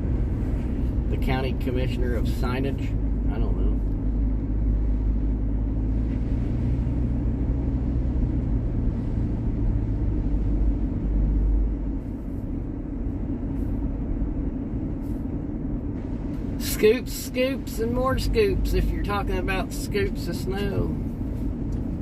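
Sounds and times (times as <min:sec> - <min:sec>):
vehicle engine and road noise: 0:00.0 - 0:22.0.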